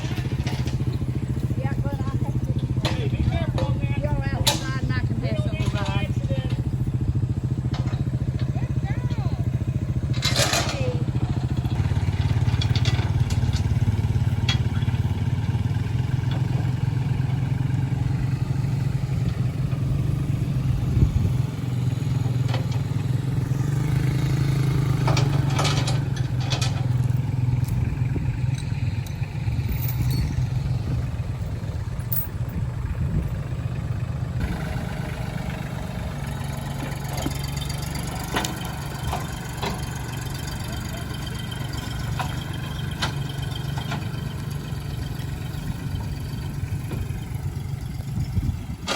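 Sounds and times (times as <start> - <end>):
knocks and clanks: 0.0 - 6.8, 7.6 - 17.1, 21.8 - 30.7, 34.4 - 47.8
engine droning: 0.0 - 48.9.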